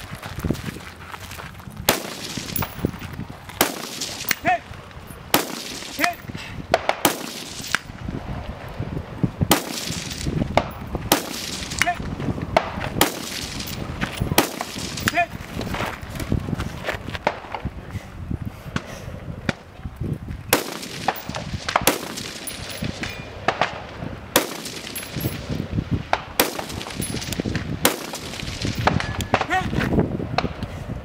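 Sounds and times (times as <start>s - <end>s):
rifle shots echoing: 1.9s - 2.8s, 3.6s - 4.6s, 5.2s - 8.0s, 9.5s - 12.0s, 12.6s - 15.3s, 20.5s - 29.6s.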